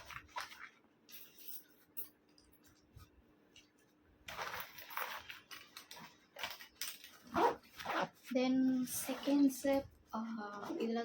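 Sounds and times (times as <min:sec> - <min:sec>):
backpack fabric rustling: 0:07.2 - 0:09.6.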